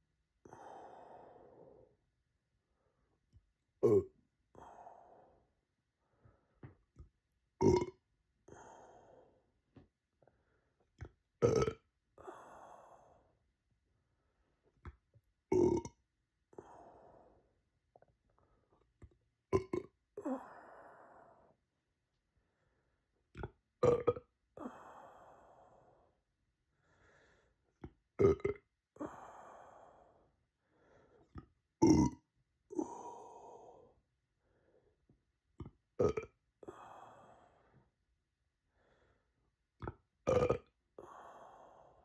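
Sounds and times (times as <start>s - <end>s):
person burping loudly: 3.8s - 4.1s, 7.6s - 8.0s, 11.4s - 11.8s, 15.5s - 16.0s, 19.6s - 19.9s, 23.8s - 24.3s, 28.2s - 28.6s, 31.8s - 33.0s, 36.0s - 36.4s, 40.3s - 40.7s.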